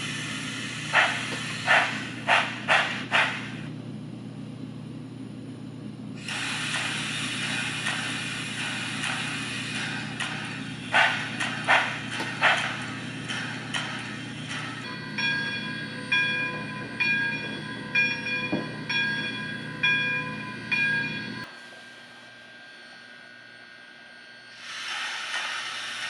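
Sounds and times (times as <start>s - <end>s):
steam hiss: 0.0s - 3.6s, 6.2s - 13.5s, 24.6s - 26.0s
steam locomotive exhaust chuffs: 0.0s - 3.7s, 6.2s - 21.5s, 24.5s - 26.0s
bell ringing: 14.8s - 21.5s.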